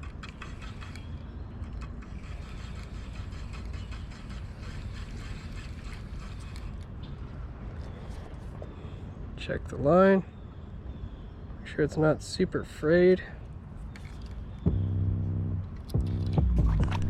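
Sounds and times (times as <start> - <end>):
fishing reel ticking: 0.0 - 6.9
low rumble: 14.6 - 17.0.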